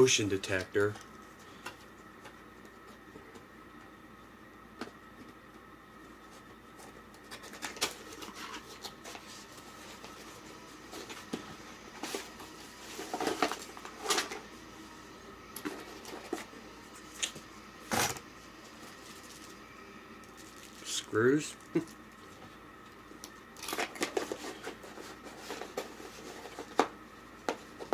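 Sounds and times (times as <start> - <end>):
packaging rustling: 6.8 - 14.5, 20.2 - 21.0.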